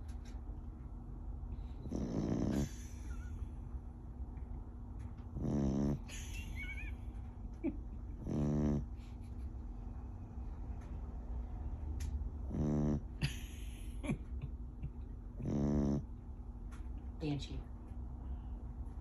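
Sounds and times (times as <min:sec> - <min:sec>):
dog snoring: 0:01.8 - 0:03.3, 0:05.3 - 0:06.4, 0:08.2 - 0:09.0, 0:12.4 - 0:13.4, 0:15.4 - 0:16.1.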